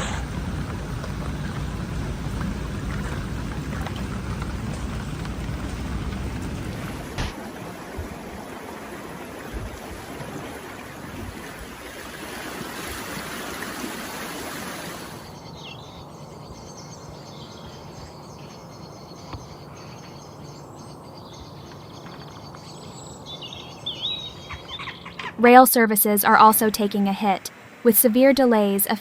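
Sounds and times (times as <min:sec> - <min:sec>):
heavy rain: 0:00.0 - 0:15.3
running floodwater: 0:00.0 - 0:15.6.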